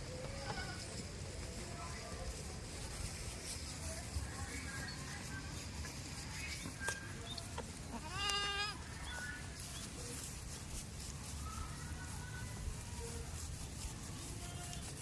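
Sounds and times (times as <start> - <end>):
goat bleating: 7.5 - 8.8.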